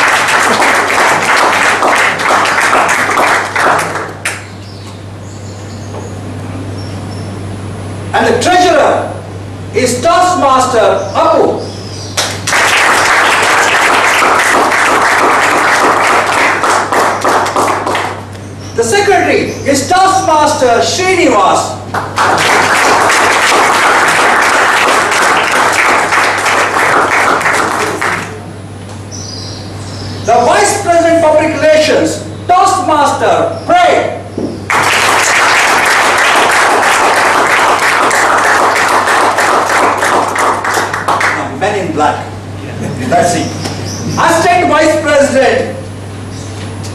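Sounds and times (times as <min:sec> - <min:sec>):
audience applauding: 0:00.0 - 0:04.4, 0:12.2 - 0:18.3, 0:21.9 - 0:28.4, 0:34.7 - 0:41.5
low electrical hum: 0:00.0 - 0:46.9.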